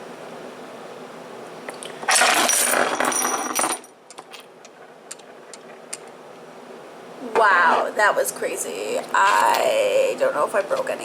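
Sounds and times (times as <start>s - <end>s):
hard objects crashing down: 2.0s - 3.9s.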